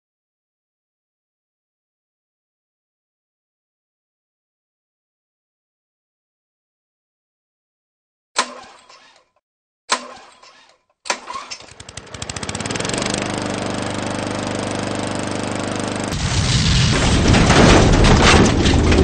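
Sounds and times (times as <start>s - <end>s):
lawn mower engine starting: 8.4s - 9.3s, 9.9s - 16.2s.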